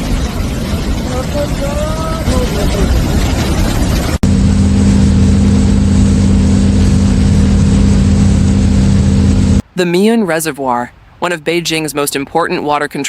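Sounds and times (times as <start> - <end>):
loud motor drone: 4.2 - 9.6.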